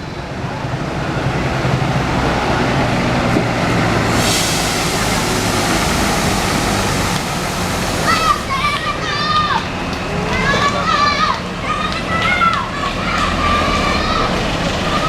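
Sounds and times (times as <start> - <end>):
bus engine running: 0.0 - 15.0
loud rushing hiss: 3.4 - 9.6.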